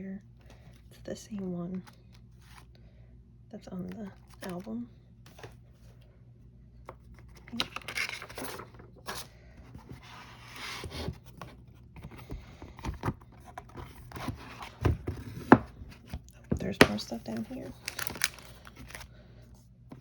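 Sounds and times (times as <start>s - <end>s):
paper and cardboard rustling: 7.1s - 19.1s.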